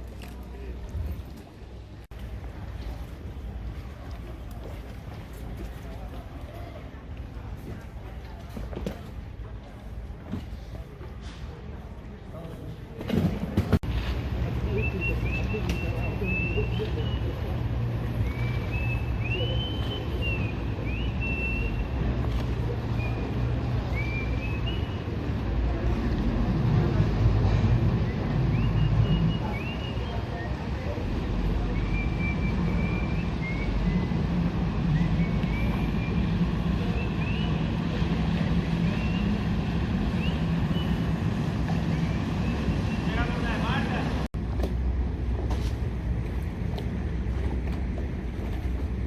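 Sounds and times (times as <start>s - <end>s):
engine humming: 0.0s - 49.0s
high whistling tones: 31.6s - 37.7s.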